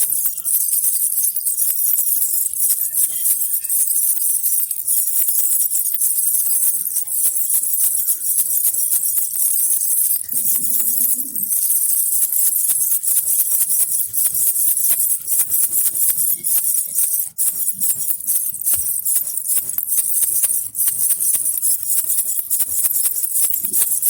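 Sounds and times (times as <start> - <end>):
baby rattle jingling: 0.0 - 24.0.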